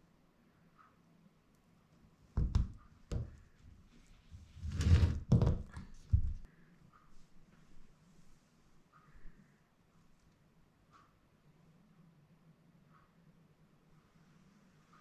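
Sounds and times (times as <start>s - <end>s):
dull thunks on hard surface: 2.4s - 3.4s.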